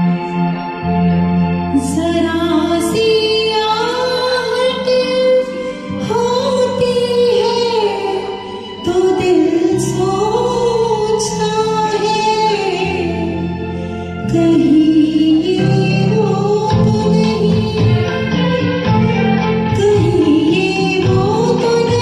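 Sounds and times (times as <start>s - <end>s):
karaoke backing track: 0.0s - 22.0s
woman singing: 1.7s - 22.0s.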